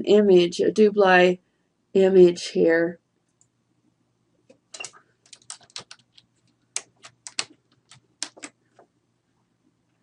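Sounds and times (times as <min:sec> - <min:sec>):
keyboard typing: 0:04.5 - 0:08.9.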